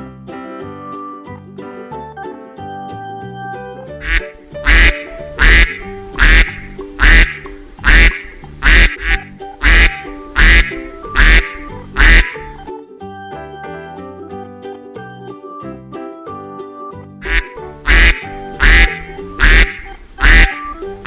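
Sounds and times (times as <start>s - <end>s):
keyboard music: 2.0s - 21.0s
duck quacking: 4.0s - 12.6s, 17.2s - 20.9s.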